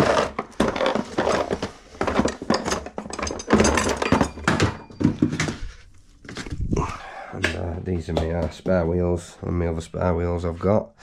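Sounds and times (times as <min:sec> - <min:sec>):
metal tools clinking: 0:00.6 - 0:05.7.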